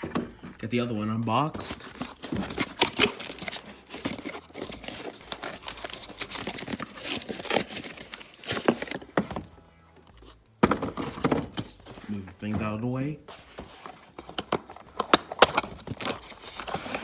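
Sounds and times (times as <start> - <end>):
packaging crinkling and rustling: 1.6 - 9.3, 13.3 - 17.0.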